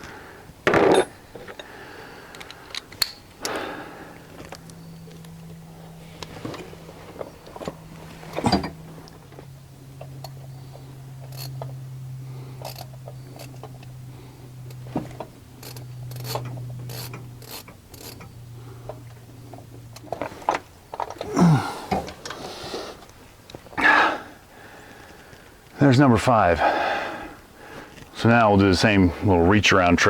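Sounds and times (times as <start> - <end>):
steady low hum: 0.0 - 30.0
hand ratchet clicking: 15.6 - 18.3
loud breathy sound: 21.3 - 23.0.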